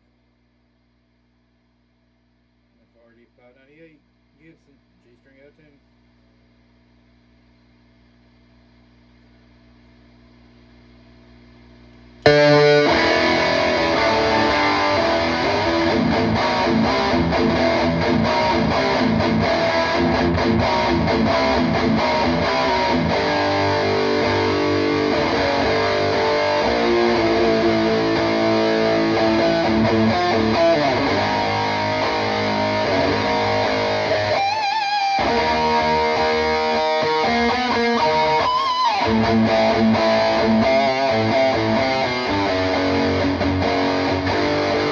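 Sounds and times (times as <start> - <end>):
faint amp hum: 0.0 - 44.9
distorted electric guitar riffs: 12.2 - 44.9.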